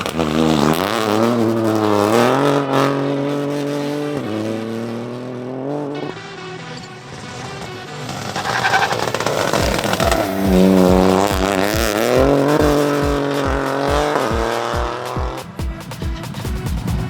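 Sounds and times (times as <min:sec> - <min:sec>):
rally car engine revving: 0:00.0 - 0:17.0
music with kick-drum beat: 0:09.4 - 0:17.0.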